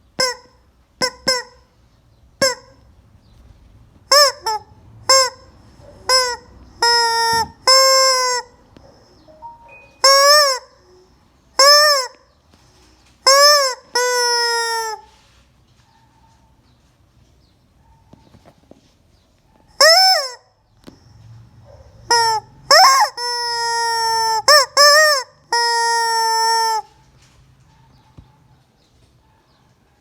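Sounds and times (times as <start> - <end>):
chicken squawking: 4.1 - 8.7, 21.7 - 27.0.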